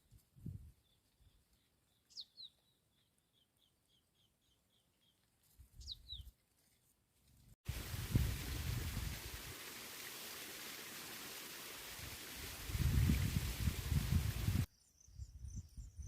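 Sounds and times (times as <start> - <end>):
small bird chirping: 0.8 - 6.4, 14.7 - 16.0.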